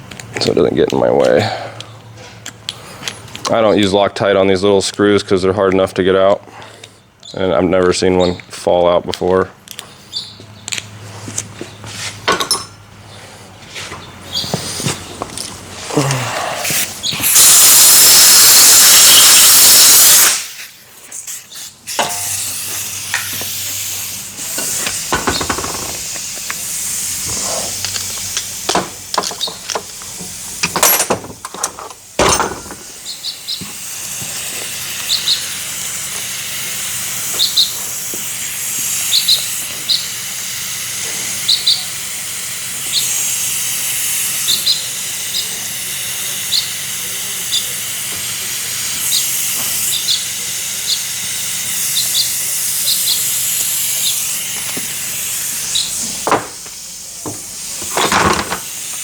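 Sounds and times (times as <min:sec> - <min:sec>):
pressurised air hiss: 0:14.3 - 0:59.0
tool clicks and knocks: 0:24.6 - 0:26.5, 0:28.7 - 0:32.9.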